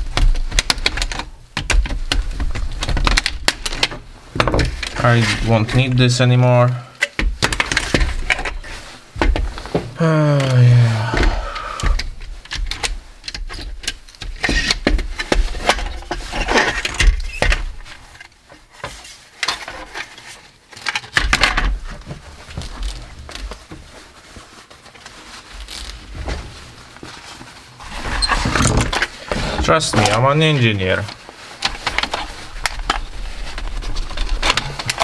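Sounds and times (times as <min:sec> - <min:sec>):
plastic and metal parts rattling: 0:00.0 - 0:05.8, 0:07.0 - 0:09.4, 0:27.9 - 0:35.0.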